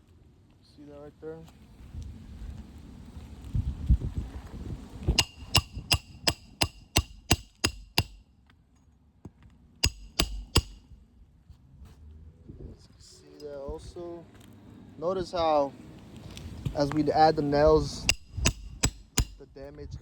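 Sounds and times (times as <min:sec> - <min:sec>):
hammer striking roofing nails: 0:05.2 - 0:08.2, 0:09.8 - 0:10.8, 0:18.1 - 0:19.4.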